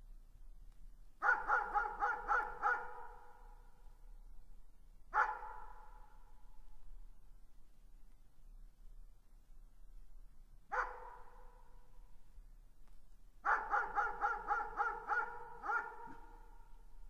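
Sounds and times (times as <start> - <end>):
distant dog barking: 1.2 - 3.4, 5.2 - 6.1, 10.7 - 11.7, 13.5 - 16.7.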